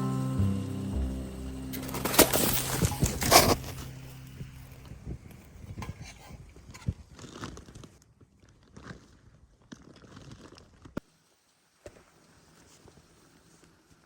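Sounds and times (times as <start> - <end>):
wrapper crinkling and tearing: 1.8 - 4.3.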